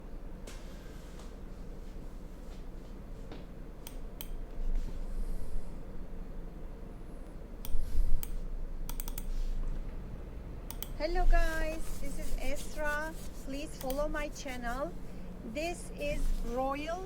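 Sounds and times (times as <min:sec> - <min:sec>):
low hum: 0:03.9 - 0:17.0
sharp clicks: 0:07.6 - 0:09.3, 0:10.7 - 0:11.0, 0:13.8 - 0:14.1.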